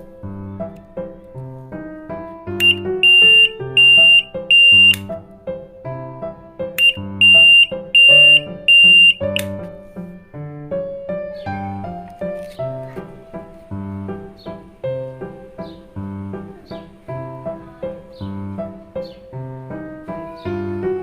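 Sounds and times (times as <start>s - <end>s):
piano music: 0.0s - 21.0s
burglar alarm beeping: 2.6s - 5.0s, 6.8s - 9.5s.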